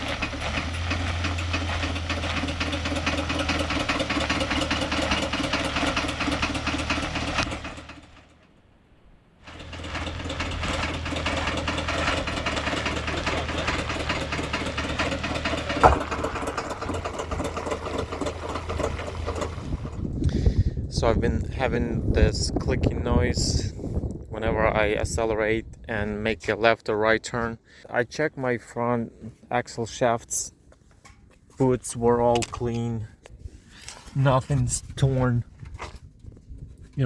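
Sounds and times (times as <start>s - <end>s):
driveline clicking and knocking: 9.5s - 20.1s.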